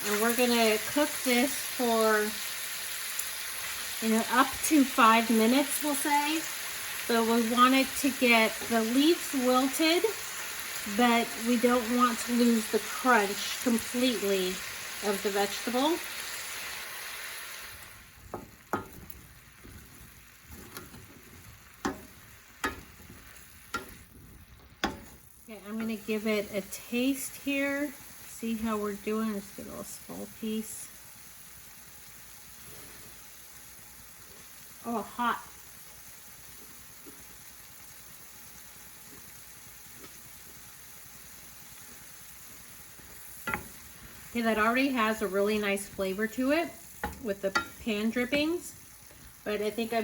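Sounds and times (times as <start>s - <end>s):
vegetables sizzling in oil: 0.0s - 50.0s
utensil clicking against pan: 18.4s - 19.2s, 21.8s - 25.2s, 47.0s - 47.8s.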